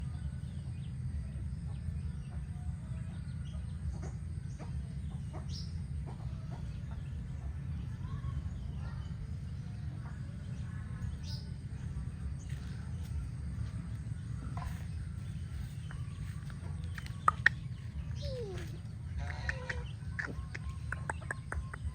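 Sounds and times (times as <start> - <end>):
low rumble: 0.0 - 21.9
chickens clucking: 14.4 - 21.9.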